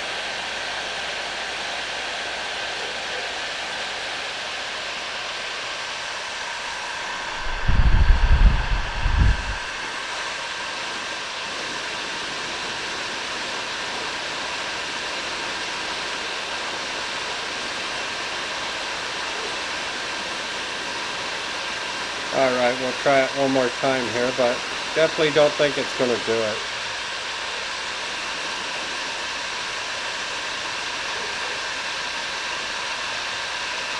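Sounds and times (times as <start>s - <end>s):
heat gun blowing air: 0.0s - 33.9s
low rumble: 7.2s - 9.8s.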